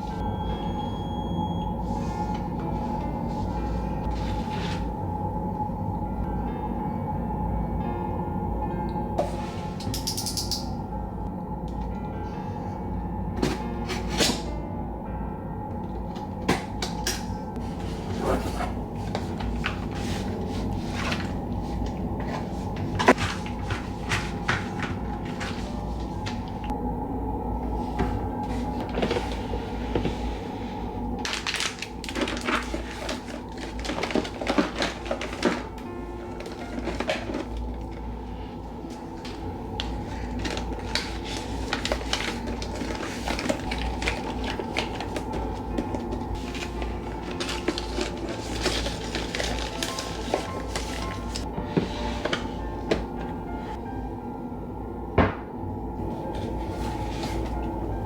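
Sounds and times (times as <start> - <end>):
steady low hum: 0.0 - 58.0
household objects clicking: 9.8 - 10.7.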